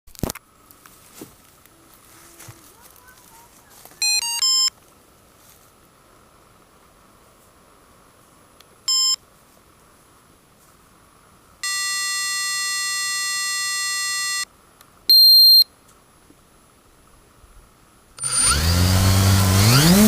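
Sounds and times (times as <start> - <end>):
short electronic beeps: 4.0 - 4.7, 8.9 - 9.2, 15.1 - 15.7
held buzzing tone: 11.6 - 14.5, 18.2 - 20.0.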